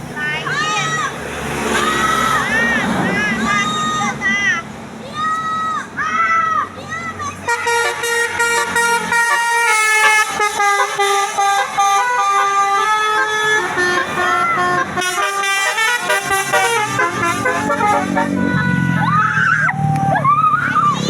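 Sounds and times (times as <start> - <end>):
musical bus horn melody: 7.5 - 19.4.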